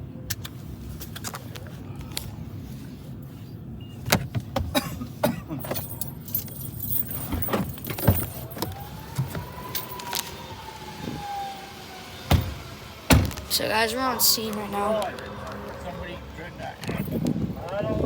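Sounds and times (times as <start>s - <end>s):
vehicle running: 5.5s - 18.0s
rising and falling tone: 8.7s - 17.6s.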